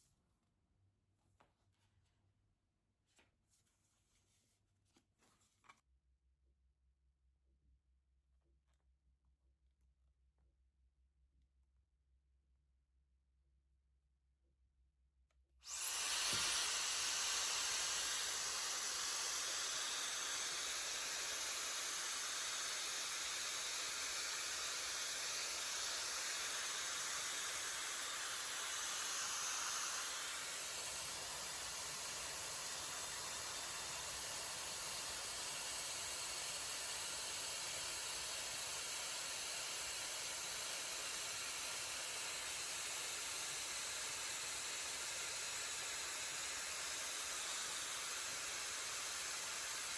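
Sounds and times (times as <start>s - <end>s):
hair dryer running: 15.6s - 49.9s.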